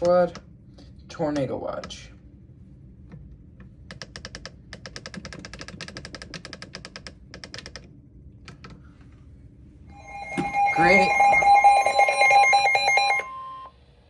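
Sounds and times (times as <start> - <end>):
low steady hum: 0.0 - 4.0, 7.8 - 14.0.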